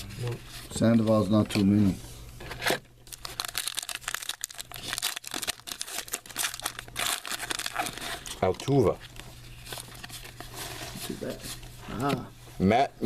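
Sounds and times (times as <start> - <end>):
wrappers crinkling and rustling: 3.0 - 11.7
wrapper tearing: 3.1 - 8.7.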